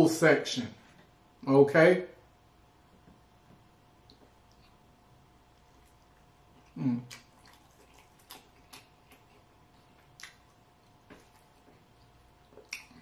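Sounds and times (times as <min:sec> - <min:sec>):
quiet chewing: 0:04.0 - 0:13.0
person humming mm: 0:06.7 - 0:07.2
wet mouth clicks: 0:10.2 - 0:10.5.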